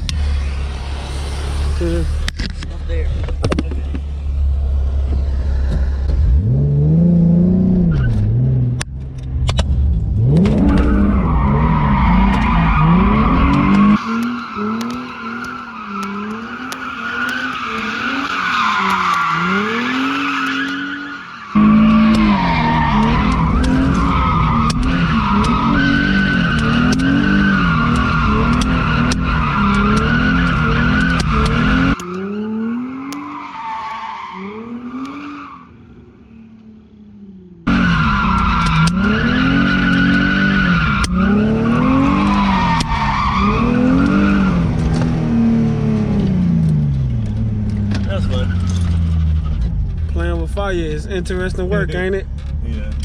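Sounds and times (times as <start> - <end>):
tires squealing: 0.0 - 37.0, 37.6 - 53.0
car engine revving: 0.0 - 53.0
short sharp pops: 13.5 - 22.4.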